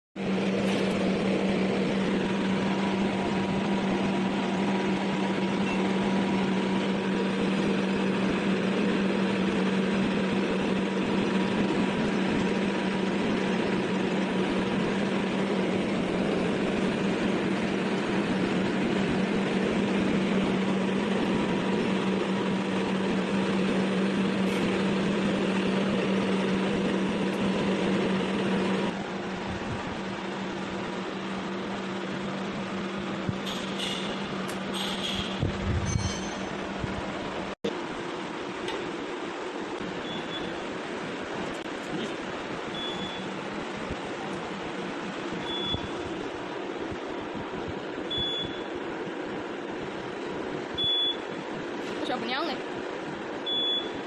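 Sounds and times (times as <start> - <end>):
machinery droning: 0.2 - 54.0.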